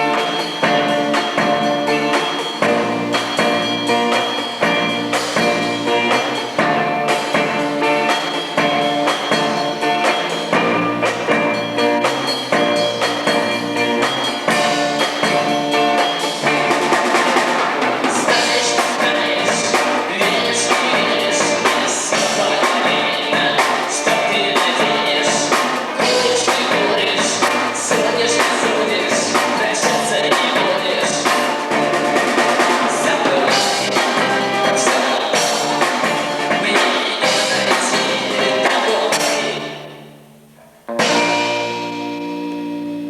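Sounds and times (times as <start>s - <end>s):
cymbals: 0.0s - 40.0s
drum kit beat: 0.0s - 40.0s, 40.9s - 43.0s
live band playing: 0.0s - 43.0s.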